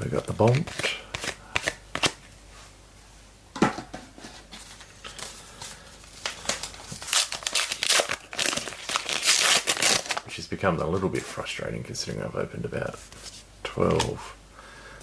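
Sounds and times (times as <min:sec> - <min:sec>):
cards being shuffled: 0:00.2 - 0:02.2
foil wrapper crinkling: 0:06.0 - 0:10.3.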